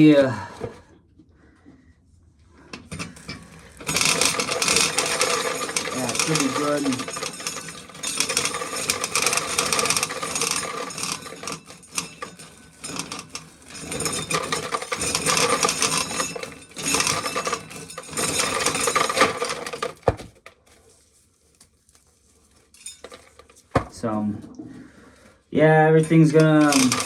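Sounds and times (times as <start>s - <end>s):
corn kernels rattling into pail: 2.9s - 20.4s, 26.0s - 27.0s.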